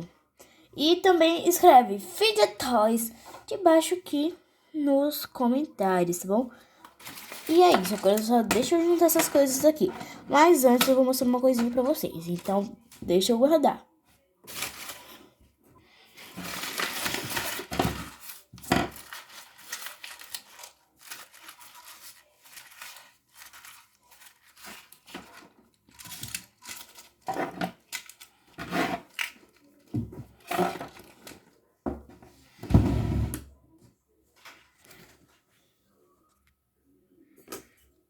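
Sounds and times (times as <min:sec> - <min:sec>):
plastic packaging crinkling: 0:07.0 - 0:09.5, 0:14.5 - 0:15.3, 0:16.2 - 0:29.8.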